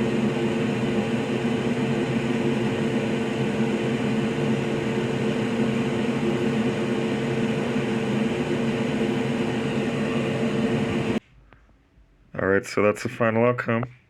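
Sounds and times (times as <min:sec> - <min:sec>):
machine hum: 0:00.0 - 0:11.2.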